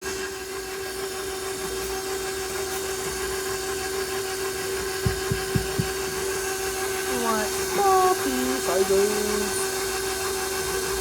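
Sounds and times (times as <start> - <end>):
small electric motor humming: 0.0 - 11.0
short low thumps: 5.0 - 6.1.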